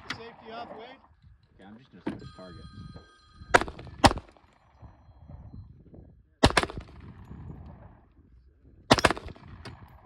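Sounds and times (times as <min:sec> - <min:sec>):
gunshots with echo: 0:03.5 - 0:04.4, 0:06.4 - 0:07.2, 0:08.9 - 0:10.0.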